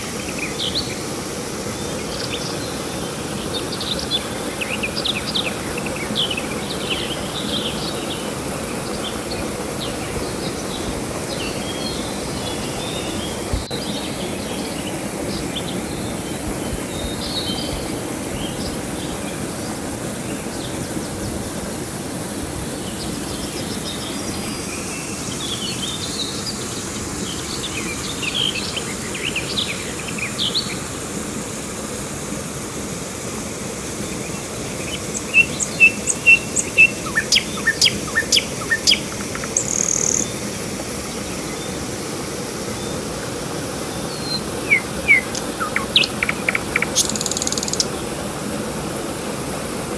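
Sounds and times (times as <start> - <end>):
flowing river water: 0.0 - 49.9
birds chirping: 34.1 - 40.5, 43.7 - 48.1
loud sharp bird calls: 34.9 - 40.4, 44.1 - 48.0.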